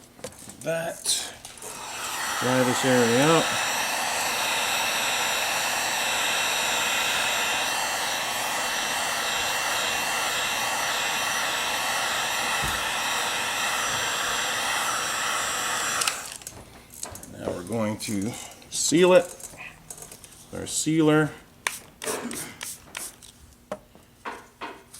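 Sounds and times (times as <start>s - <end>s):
hot-air blower whining: 1.1s - 16.4s.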